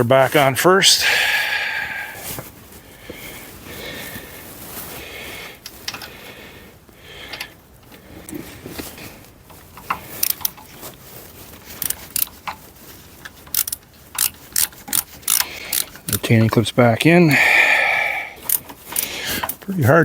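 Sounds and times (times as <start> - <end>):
metallic clicks of tools and parts: 5.6 - 6.1, 7.3 - 7.9, 9.5 - 10.7, 11.8 - 12.6, 13.2 - 16.6.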